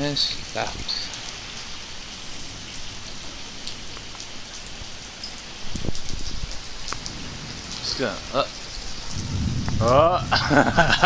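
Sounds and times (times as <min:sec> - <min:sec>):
light rain pattering: 0:00.0 - 0:11.0
low rumble: 0:07.0 - 0:11.0.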